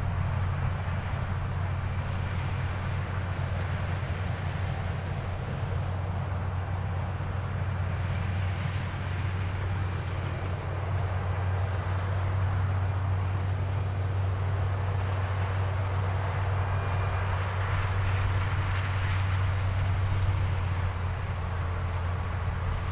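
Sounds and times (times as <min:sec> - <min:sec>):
combine harvester engine drone: 0:00.0 - 0:22.9.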